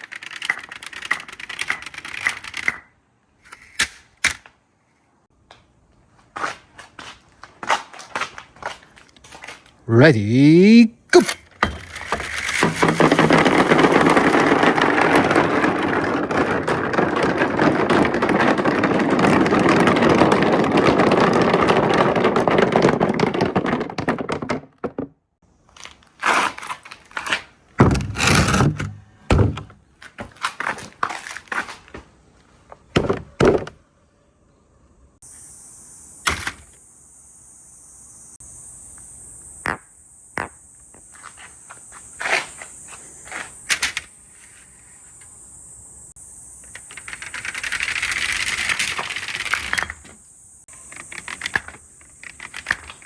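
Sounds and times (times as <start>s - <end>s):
marbles rolling on track: 0.0s - 2.8s, 11.7s - 25.0s, 46.6s - 50.1s
marbles clicking and knocking: 11.7s - 25.1s
crickets chirping: 32.6s - 53.0s.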